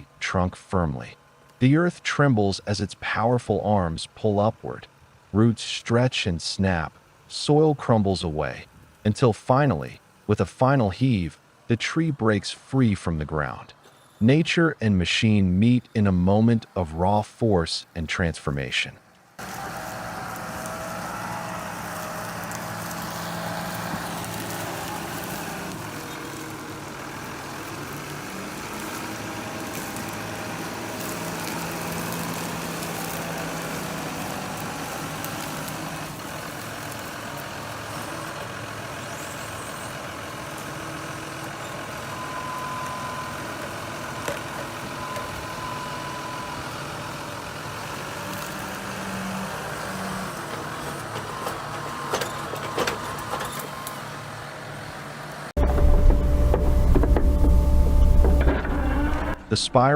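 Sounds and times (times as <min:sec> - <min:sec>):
heavy diesel engine running: 0:19.4 - 0:59.9.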